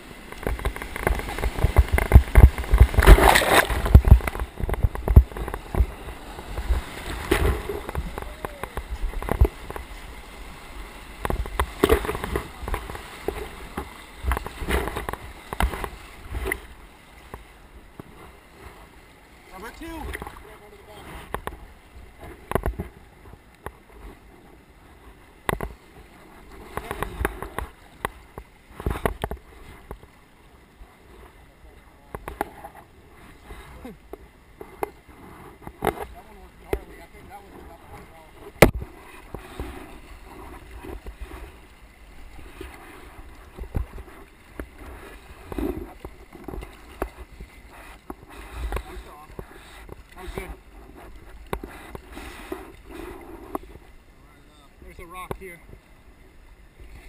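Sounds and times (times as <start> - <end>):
moving water wash: 0.0 - 57.0
paddle knocking and splashing: 0.0 - 57.0.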